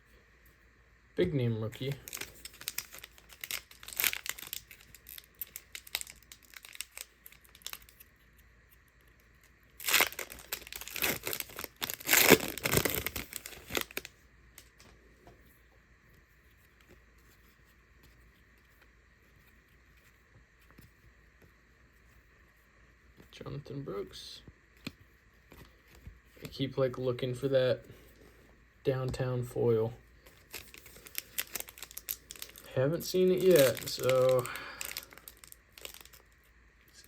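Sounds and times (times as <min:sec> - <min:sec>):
faint steady hum: 0:00.0 - 0:37.0
rustling of wrapper and cards: 0:01.6 - 0:15.0, 0:30.2 - 0:37.0
foil wrapper tearing and crinkling: 0:01.9 - 0:08.1, 0:09.7 - 0:14.7, 0:30.3 - 0:37.0.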